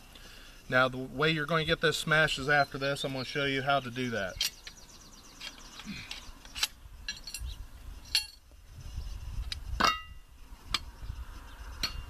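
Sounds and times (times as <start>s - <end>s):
metallic clinks of steel parts: 4.2s - 4.8s, 5.4s - 8.5s.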